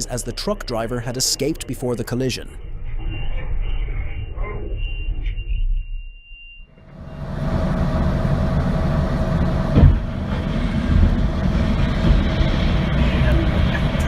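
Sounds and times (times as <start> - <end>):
vehicle rumble: 6.7 - 14.0
short knock: 9.8 - 10.1.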